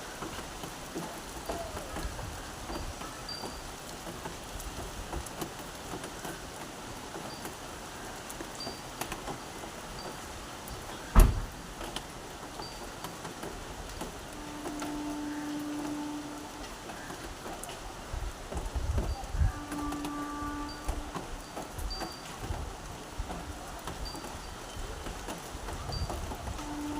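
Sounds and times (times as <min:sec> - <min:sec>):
steady rain falling: 0:00.0 - 0:26.9
water drips: 0:08.2 - 0:17.8
loud thump: 0:11.2 - 0:11.5.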